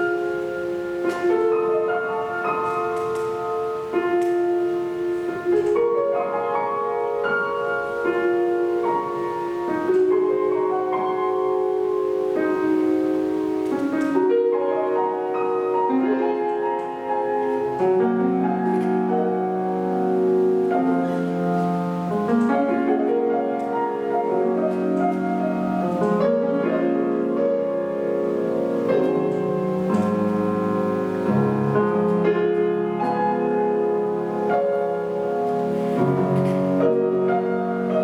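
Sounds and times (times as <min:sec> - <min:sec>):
solo piano classical piece: 0:00.0 - 0:38.0.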